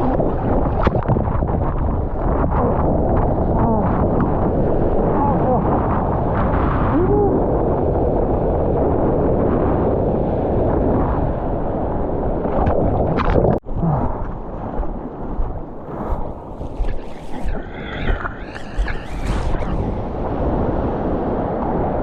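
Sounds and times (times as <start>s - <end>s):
wind buffeting microphone: 0.0s - 22.0s
sea water rushing: 12.4s - 22.0s.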